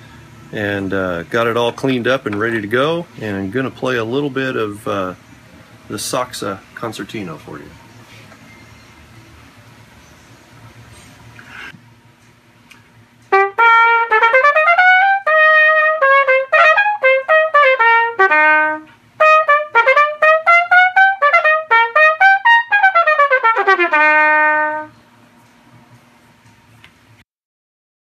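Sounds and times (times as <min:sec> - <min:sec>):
solo cornet melody: 0:13.3 - 0:25.0.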